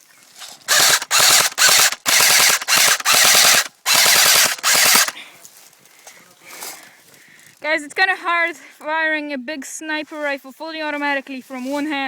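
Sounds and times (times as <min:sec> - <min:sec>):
airsoft rifle firing bursts: 0:00.7 - 0:05.2.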